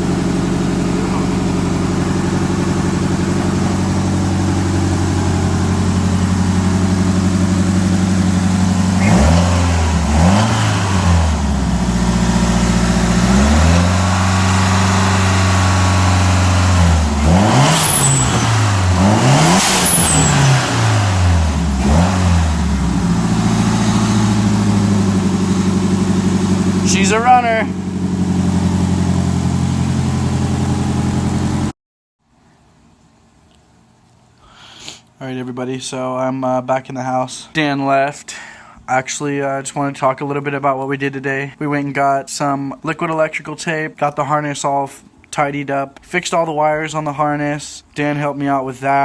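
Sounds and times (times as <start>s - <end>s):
car engine idling and revving: 0.0s - 31.7s.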